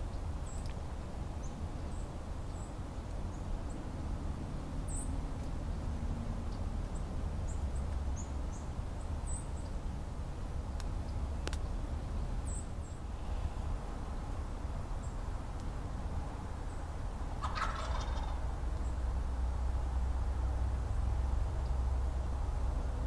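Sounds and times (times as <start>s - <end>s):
low steady rumble: 0.0s - 23.0s
turkey gobbling: 17.4s - 18.4s.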